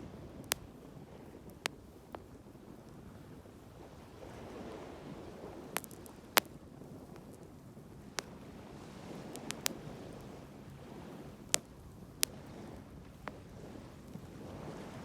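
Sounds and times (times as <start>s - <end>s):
bonfire crackling: 0.0s - 2.4s, 3.8s - 14.7s
wind: 0.0s - 15.0s
burning wood popping: 0.3s - 0.8s, 5.6s - 8.5s, 9.1s - 10.3s, 11.3s - 12.4s
sea waves: 8.2s - 15.0s.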